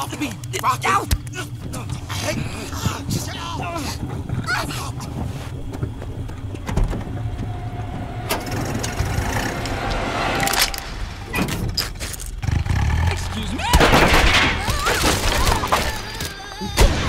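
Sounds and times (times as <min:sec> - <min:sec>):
car engine running: 0:05.1 - 0:13.9.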